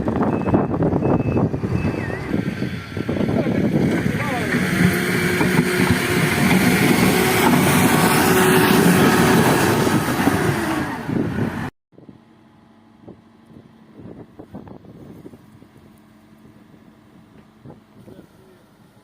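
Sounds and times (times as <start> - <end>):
diesel engine running under load: 0.0 - 19.0
faint engine sound: 12.0 - 19.0.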